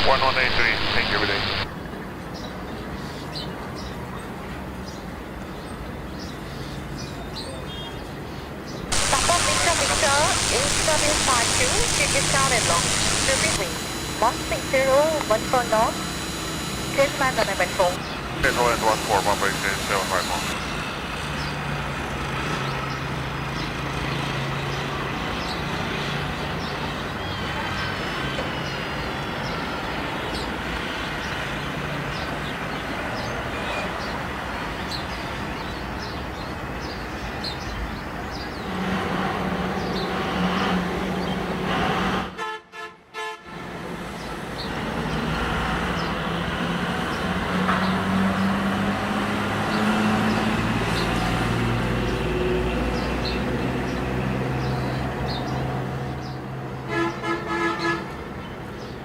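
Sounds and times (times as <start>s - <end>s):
jet airliner engine: 0.0s - 1.7s, 8.9s - 21.3s
road traffic: 0.0s - 7.3s, 7.9s - 42.4s, 43.5s - 59.0s
vehicle horn toot: 42.4s - 43.5s, 56.9s - 58.0s.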